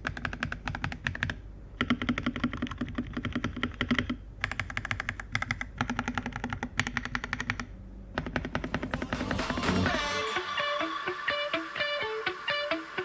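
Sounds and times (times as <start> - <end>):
fast typing on mechanical keyboard: 0.0 - 9.4.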